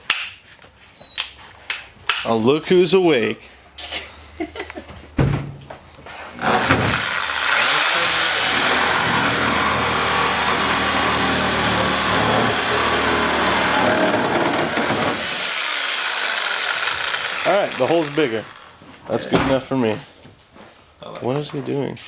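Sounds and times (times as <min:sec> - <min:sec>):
reciprocating saw cutting: 0:06.4 - 0:18.8
knocks: 0:10.7 - 0:15.3.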